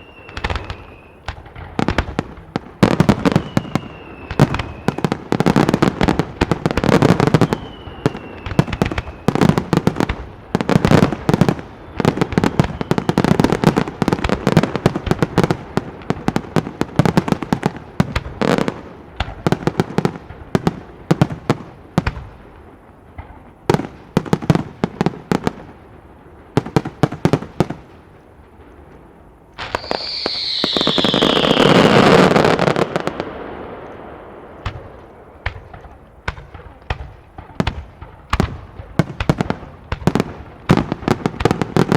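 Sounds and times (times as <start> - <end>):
falling firework whistle: 0.0 - 2.1, 2.8 - 6.1, 6.8 - 9.9, 10.9 - 14.3, 29.6 - 35.6
fireworks bangs and crackling: 0.0 - 41.9.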